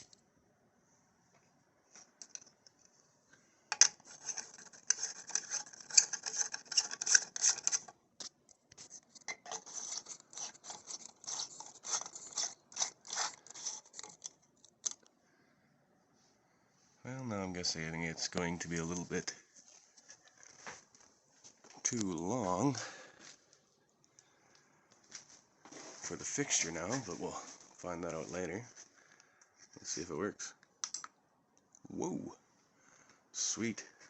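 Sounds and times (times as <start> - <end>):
screw threads grinding and clicking: 3.7 - 8.0, 9.2 - 15.1.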